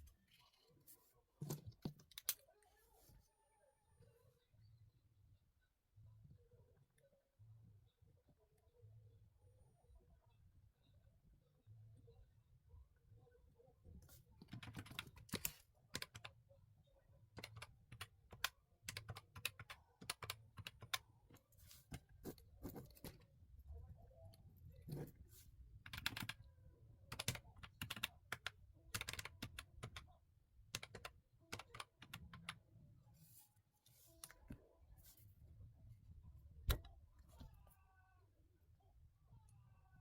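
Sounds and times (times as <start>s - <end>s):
typing on computer keyboard: 14.4s - 16.3s, 17.4s - 21.0s, 25.9s - 26.4s, 27.1s - 30.1s, 30.7s - 32.6s.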